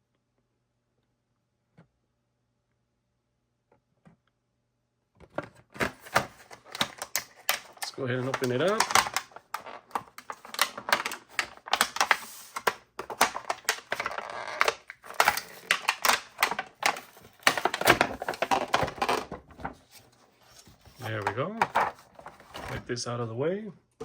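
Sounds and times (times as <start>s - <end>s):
packaging clicks and crackles: 5.4s - 22.8s
packaging rustling: 5.4s - 22.9s.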